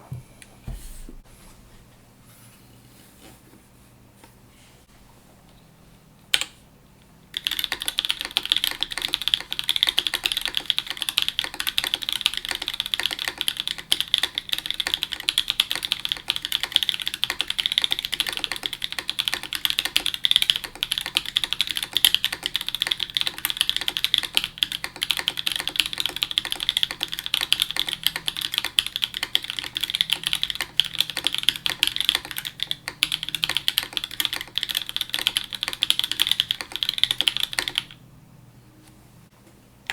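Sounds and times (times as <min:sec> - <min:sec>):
mechanical keyboard typing: 0:07.3 - 0:38.0.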